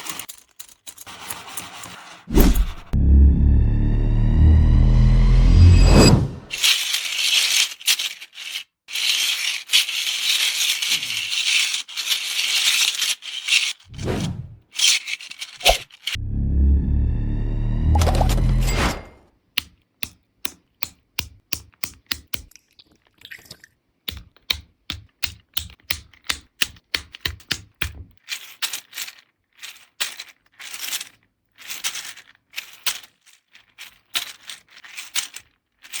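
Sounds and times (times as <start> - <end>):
plastic rattling and scraping: 6.5 - 16.2, 27.2 - 36.0.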